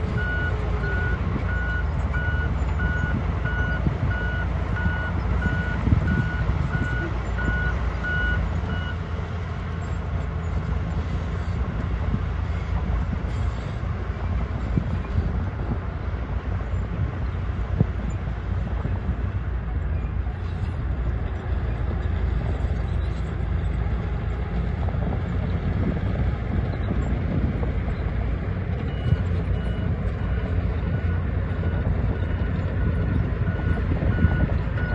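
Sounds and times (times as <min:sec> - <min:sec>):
heavy diesel machinery running: 0:00.0 - 0:34.9
vehicle back-up alarm beeping: 0:00.1 - 0:09.1, 0:28.7 - 0:34.9.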